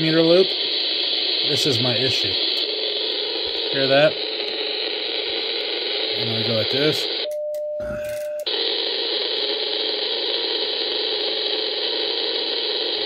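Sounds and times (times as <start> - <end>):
radio static hiss with buzz: 0.0 - 13.0
steady tone: 0.0 - 13.0.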